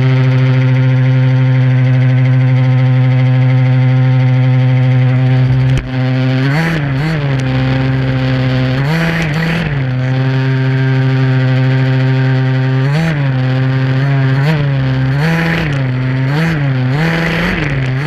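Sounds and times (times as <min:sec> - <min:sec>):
two-stroke engine revving: 0:00.0 - 0:18.0.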